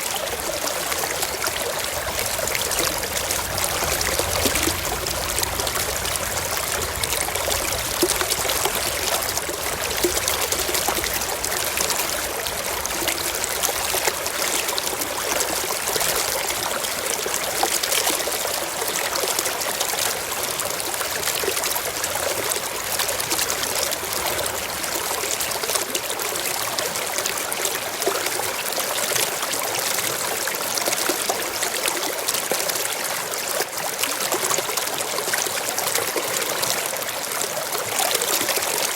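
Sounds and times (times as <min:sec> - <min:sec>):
waterfall cascading: 0:00.0 - 0:27.7.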